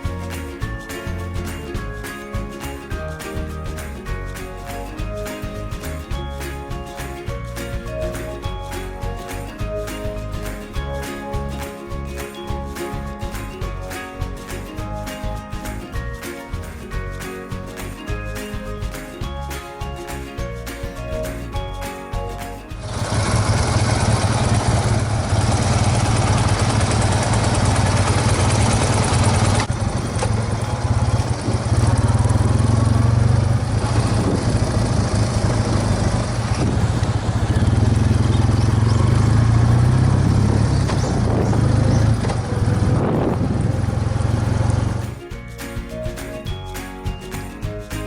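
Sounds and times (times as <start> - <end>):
wind and road noise: 0.0 - 48.0
motorcycle engine droning: 22.8 - 45.0.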